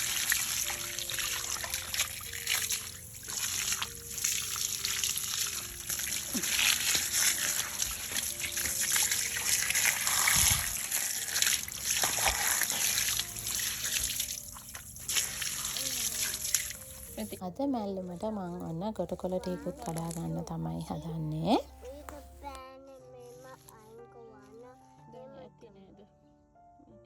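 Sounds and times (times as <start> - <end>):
water trickling and splashing: 0.0 - 17.4, 19.2 - 20.9
soft steady notes: 0.0 - 22.7.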